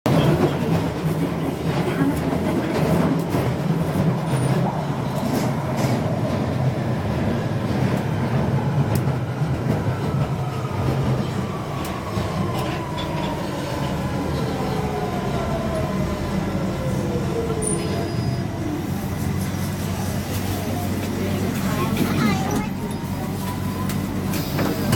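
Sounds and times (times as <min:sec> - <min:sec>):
train rumbling: 0:00.0 - 0:24.9
sharp tapping clicks from train: 0:08.9 - 0:13.4, 0:22.0 - 0:24.9.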